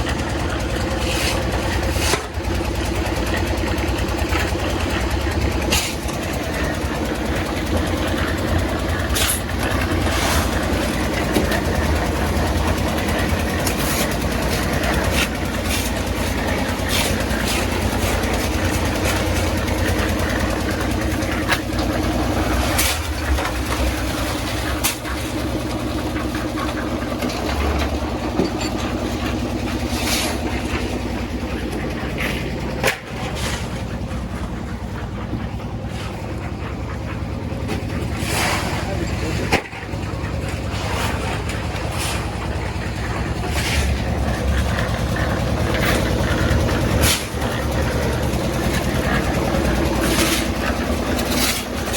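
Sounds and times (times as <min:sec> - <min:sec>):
engine running: 0:00.0 - 0:51.9
sharp clicks and knocks: 0:26.5 - 0:29.4.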